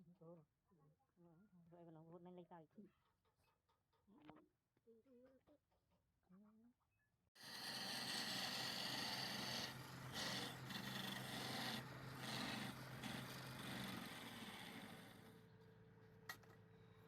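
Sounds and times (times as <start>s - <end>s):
chisel scraping spinning wood: 7.4s - 15.6s
lathe motor hum: 7.4s - 17.0s.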